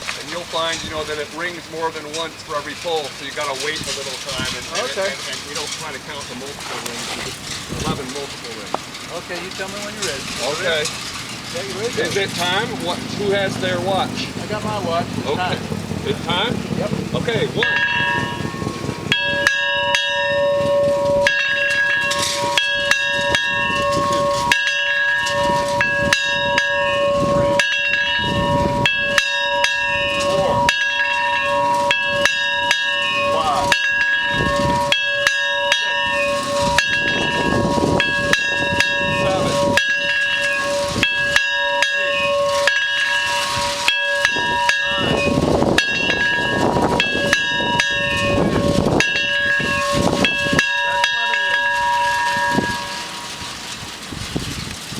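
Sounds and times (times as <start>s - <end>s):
tower bell tolling: 0.0s - 53.8s.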